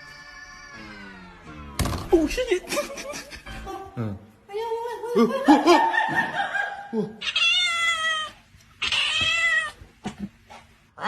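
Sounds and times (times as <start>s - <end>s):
cat meowing: 7.2s - 9.8s.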